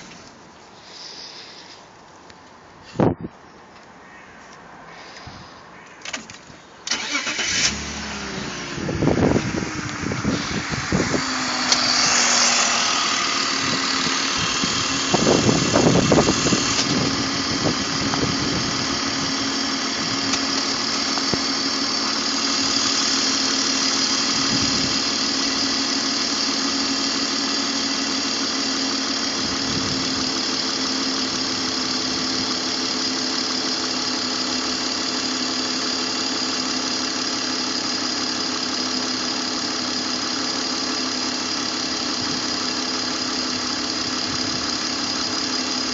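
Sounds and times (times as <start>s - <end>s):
car engine idling: 6.2s - 45.9s.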